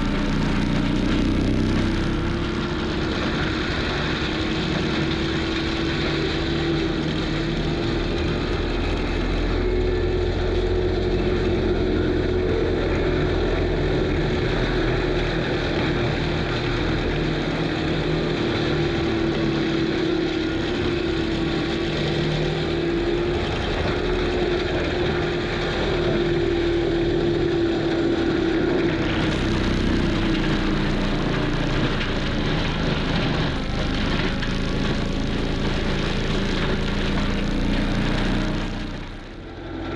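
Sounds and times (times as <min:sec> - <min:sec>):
diesel engine running hard: 0:00.0 - 0:39.9
forestry mulcher whine: 0:00.0 - 0:39.9.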